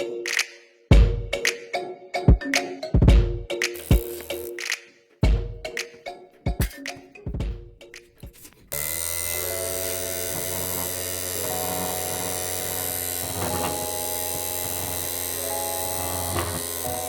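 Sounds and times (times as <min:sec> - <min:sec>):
small motor buzzing whir: 0:03.8 - 0:04.6, 0:08.2 - 0:17.0.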